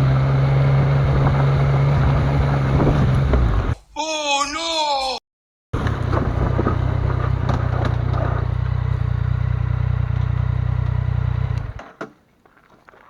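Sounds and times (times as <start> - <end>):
motorcycle engine: 0.0 - 3.8, 5.8 - 11.9
wind rumble: 0.5 - 3.8, 5.8 - 7.9.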